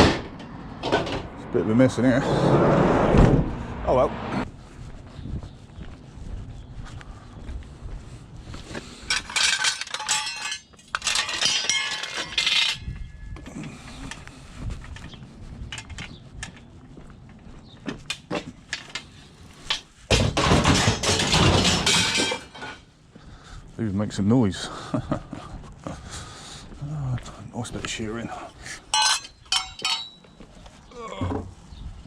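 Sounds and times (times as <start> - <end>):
scrap metal clattering: 9.1 - 13.0, 18.8 - 22.9, 28.9 - 30.2.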